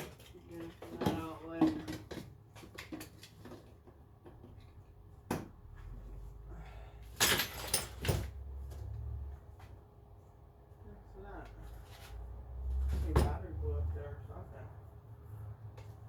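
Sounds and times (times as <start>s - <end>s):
tools clicking and knocking in drawer: 0.0s - 4.7s
tools clattering: 7.2s - 8.4s.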